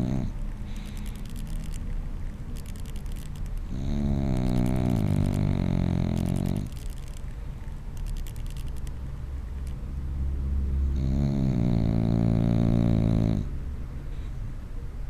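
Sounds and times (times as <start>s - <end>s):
dog snoring: 0.0s - 1.2s, 3.6s - 7.0s, 10.9s - 13.5s.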